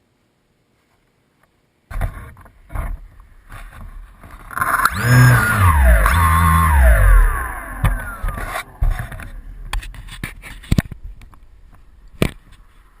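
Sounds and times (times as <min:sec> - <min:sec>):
motor whine falling in pitch: 0:04.5 - 0:09.8.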